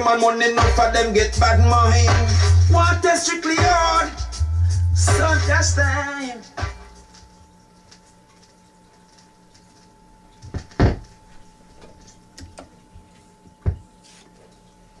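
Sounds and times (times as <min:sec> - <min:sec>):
faint steady hum: 0:00.0 - 0:15.0
sharp knocks: 0:10.5 - 0:11.1.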